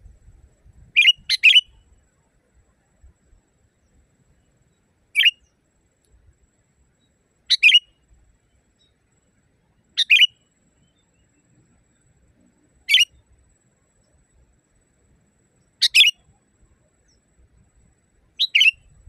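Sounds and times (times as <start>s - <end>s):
bird calling: 0.9s - 1.8s, 5.2s - 5.5s, 7.5s - 8.0s, 10.0s - 10.4s, 12.8s - 13.2s, 15.8s - 16.3s, 18.4s - 19.0s.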